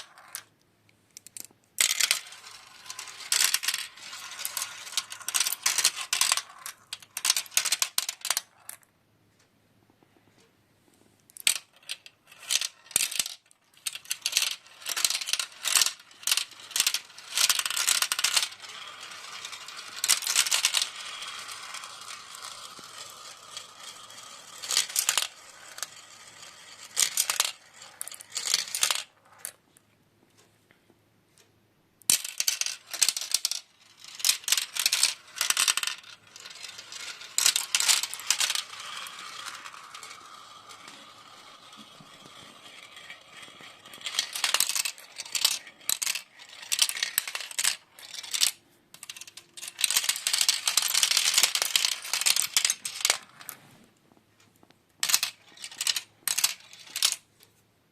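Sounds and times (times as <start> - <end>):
marbles rolling rattle: 0.0 - 0.5, 1.3 - 8.8, 11.4 - 29.6, 32.1 - 57.3
marbles clicking on plastic: 0.0 - 8.9, 11.3 - 29.6, 32.0 - 57.2.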